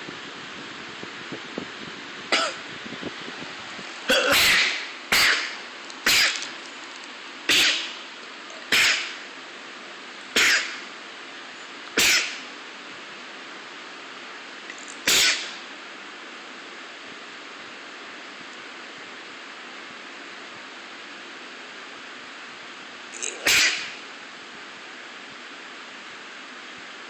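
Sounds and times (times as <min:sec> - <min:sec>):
person sneezing: 0:04.1 - 0:06.4, 0:07.5 - 0:07.9, 0:08.7 - 0:09.2, 0:10.4 - 0:10.8, 0:12.0 - 0:12.4, 0:15.1 - 0:15.6, 0:23.2 - 0:24.0.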